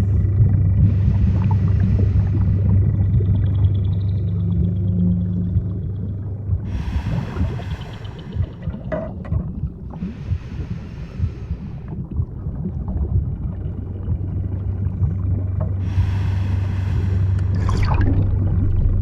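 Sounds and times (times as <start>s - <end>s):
deep underwater rumble: 0.0s - 19.0s
low hum: 0.0s - 19.0s
water bubbling: 0.0s - 19.0s
airy hissing: 6.7s - 8.9s, 9.9s - 12.0s, 15.8s - 18.2s.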